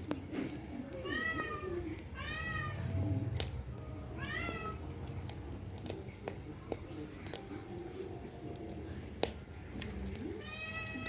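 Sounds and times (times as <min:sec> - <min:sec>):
cat meowing: 0:00.8 - 0:05.3, 0:10.2 - 0:11.0.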